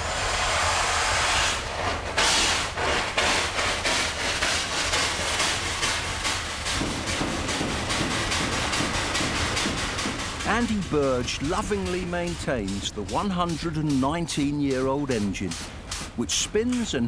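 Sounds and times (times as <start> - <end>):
steam engine running: 0.0 - 17.0
steam hissing: 0.0 - 17.0.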